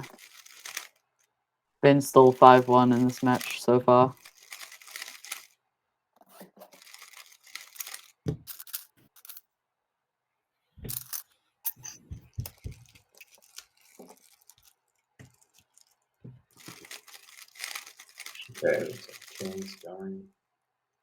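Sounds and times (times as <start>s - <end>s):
handling clicks and rustling: 0.0s - 1.0s, 2.2s - 5.5s, 6.2s - 9.4s, 10.9s - 19.8s.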